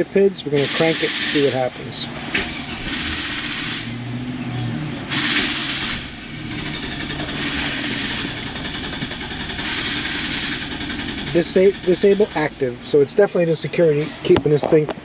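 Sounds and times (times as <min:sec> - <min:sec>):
starter motor cranking engine: 0:00.6 - 0:01.6, 0:02.3 - 0:04.0, 0:05.1 - 0:12.9.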